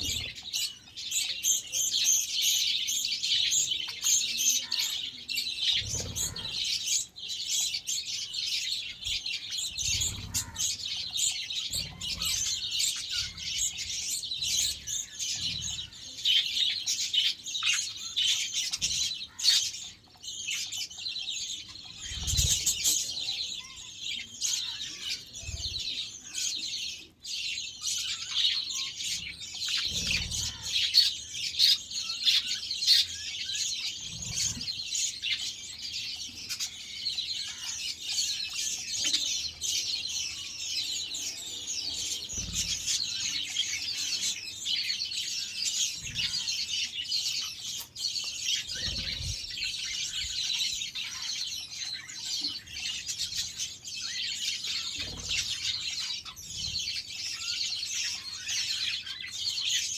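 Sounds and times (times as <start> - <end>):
budgerigars chirping and warbling: 0.0 - 59.9.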